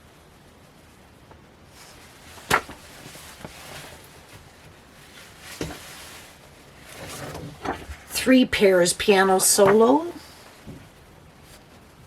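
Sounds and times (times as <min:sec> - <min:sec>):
paper rustling: 0:01.7 - 0:08.1, 0:09.3 - 0:11.9
books knocking down on surface: 0:02.4 - 0:03.5.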